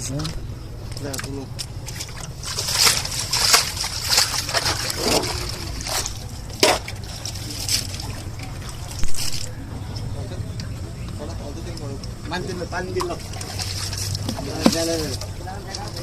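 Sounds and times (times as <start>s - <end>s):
fish thrashing water splashing: 1.1s - 9.6s, 12.9s - 16.0s.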